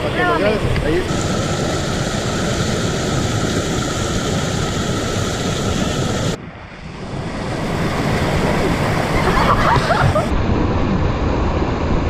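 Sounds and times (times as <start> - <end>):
waterfall and river rushing: 0.0 - 12.0.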